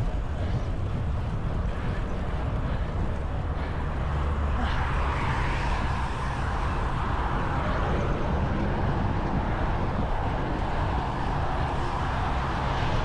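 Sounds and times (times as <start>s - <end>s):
traffic passing by: 0.0s - 13.0s
wind rumbling on microphone: 0.0s - 13.0s.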